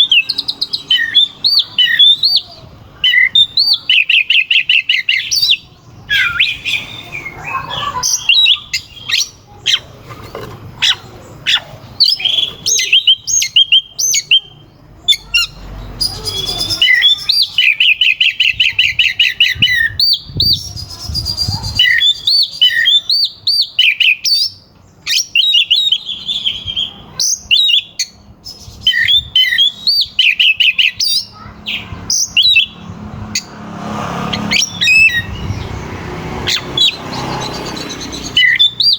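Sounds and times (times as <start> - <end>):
bird singing trills and whistles: 0.0 - 10.0, 10.8 - 33.6, 34.3 - 38.9.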